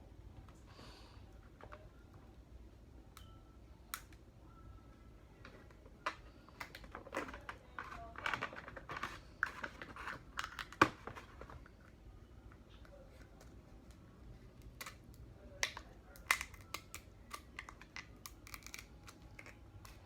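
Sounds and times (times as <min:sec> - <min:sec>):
crab shell cracking: 0:15.6 - 0:20.0.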